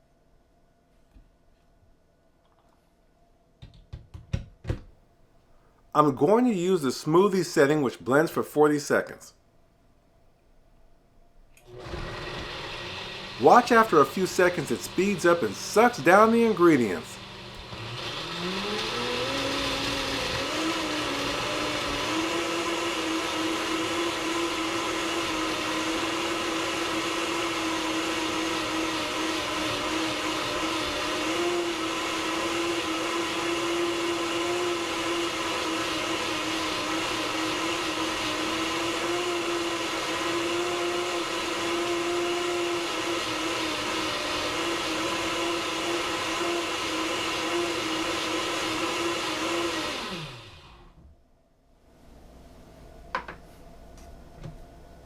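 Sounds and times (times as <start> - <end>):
blender motor running: 11.6 - 51.0.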